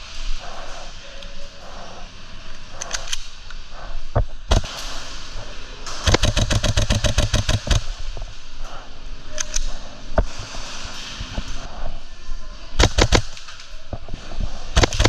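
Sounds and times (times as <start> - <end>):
airsoft rifle shots: 4.5 - 4.8, 5.9 - 8.0, 12.8 - 13.6, 14.8 - 15.0.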